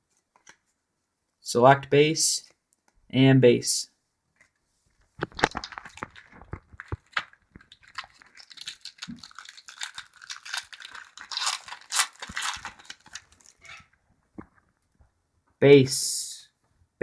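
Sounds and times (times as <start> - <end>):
cards clicking and rustling: 5.2 - 13.7
wrapper crinkling and tearing: 5.2 - 13.8.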